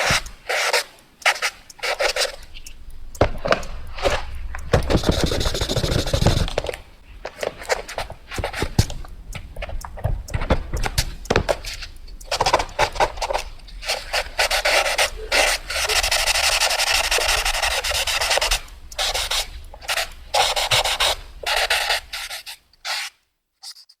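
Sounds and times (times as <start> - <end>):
pencil scratching on paper: 0.0 - 2.5, 3.2 - 6.8, 12.5 - 23.8.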